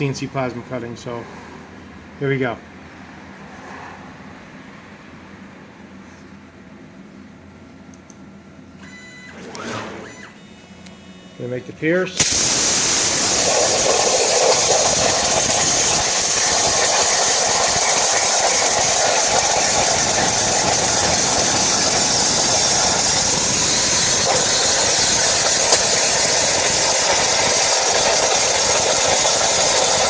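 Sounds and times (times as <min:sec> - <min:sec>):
plasma torch hissing: 0:12.2 - 0:30.0.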